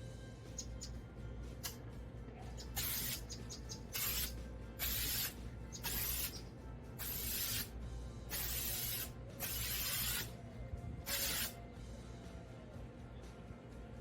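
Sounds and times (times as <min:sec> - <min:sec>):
aerosol spray can hissing: 0:02.7 - 0:06.4, 0:07.0 - 0:07.7, 0:08.3 - 0:10.3, 0:11.1 - 0:11.6.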